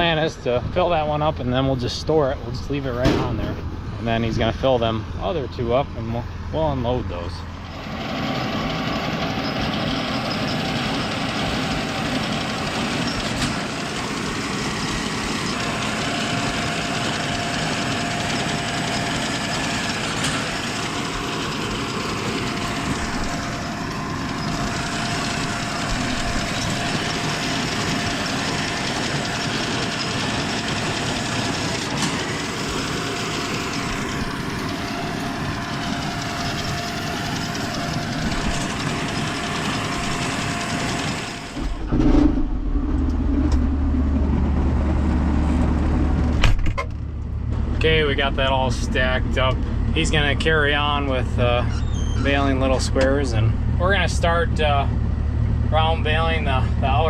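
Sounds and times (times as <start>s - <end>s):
tractor engine and baler running: 0.0s - 57.0s.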